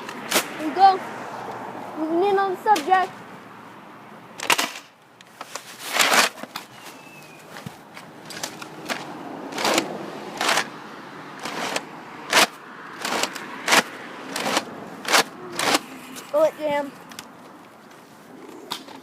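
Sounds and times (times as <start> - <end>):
clothing rustle: 5.3 - 8.6
footsteps scuffing: 6.6 - 8.1.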